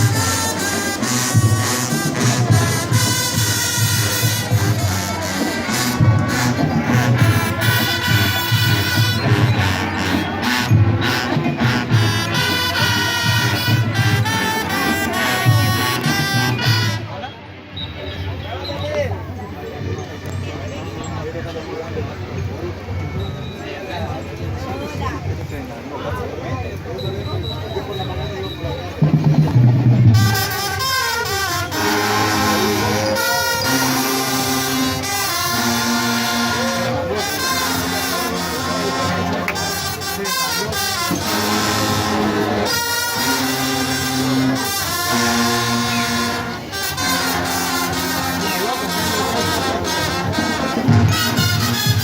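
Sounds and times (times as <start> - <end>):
steady low drum beat: 0.0 - 16.9
trombones: 0.0 - 18.4, 27.0 - 52.0
trumpets: 0.0 - 19.1, 27.0 - 52.0
brass band playing chords: 0.0 - 25.4, 26.9 - 52.0.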